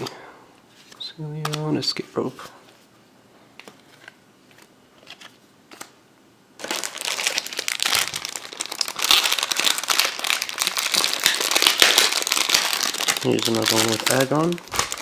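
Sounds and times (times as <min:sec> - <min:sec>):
foil wrapper crinkling: 0:06.6 - 0:15.0.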